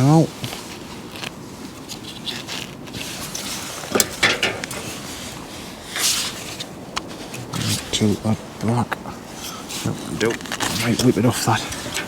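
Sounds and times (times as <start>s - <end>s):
floodlight fitting clicks and creaks: 3.9s - 4.9s.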